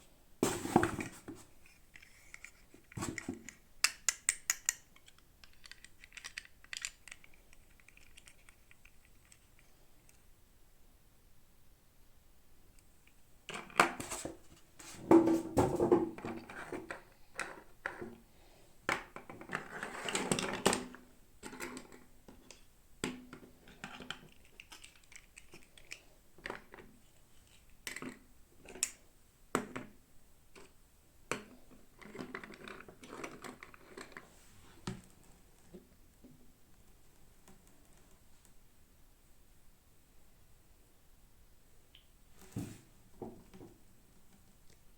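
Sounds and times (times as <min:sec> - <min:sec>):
packaging rustling and scraping: 0:00.4 - 0:03.4
plastic toys clicking: 0:01.9 - 0:10.2, 0:23.6 - 0:26.8.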